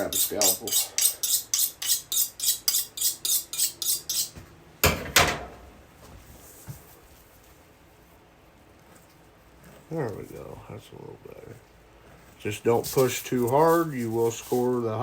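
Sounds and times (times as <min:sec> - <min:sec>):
knife being sharpened: 0:00.0 - 0:04.4.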